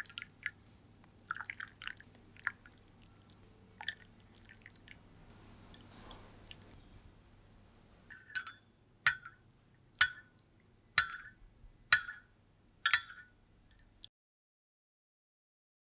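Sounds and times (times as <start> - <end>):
sharp clinks: 8.2 - 9.3, 11.0 - 11.3, 12.0 - 12.2, 12.9 - 13.2.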